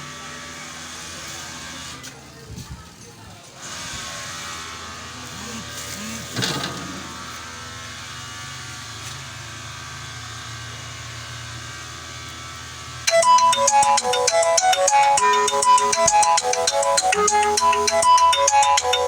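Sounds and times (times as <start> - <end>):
refrigerator compressor humming: 3.7 - 19.0
loud music with ringing tune: 13.1 - 19.0.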